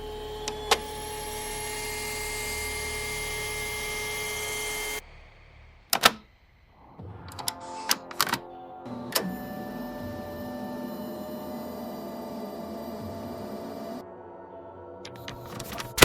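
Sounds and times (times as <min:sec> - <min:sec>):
sharp mechanical click: 0:15.1 - 0:16.0.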